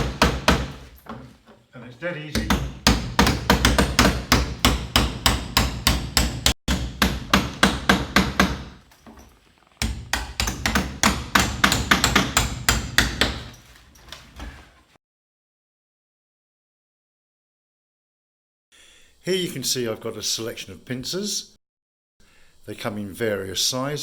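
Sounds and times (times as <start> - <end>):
hammer striking knife: 2.4 - 13.6.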